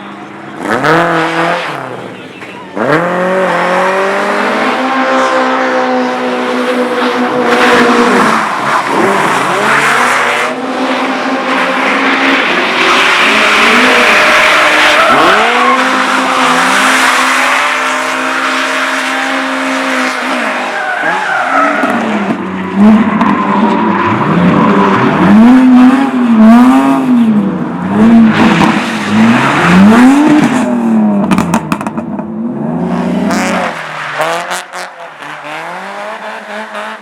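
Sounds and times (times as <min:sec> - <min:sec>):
car engine revving hard: 0:02.8 - 0:31.5, 0:32.7 - 0:37.0
tyres squealing and skidding: 0:06.6 - 0:25.7.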